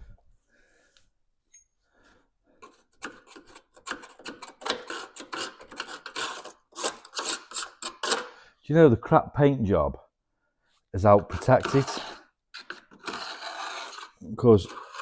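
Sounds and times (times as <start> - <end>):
rough scraping strokes: 11.0 - 15.0.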